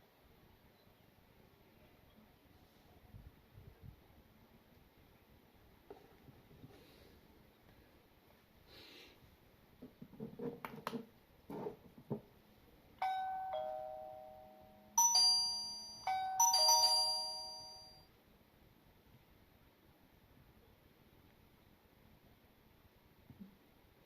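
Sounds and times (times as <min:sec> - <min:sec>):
doorbell chime ding-dong tune: 0:13.0 - 0:18.0.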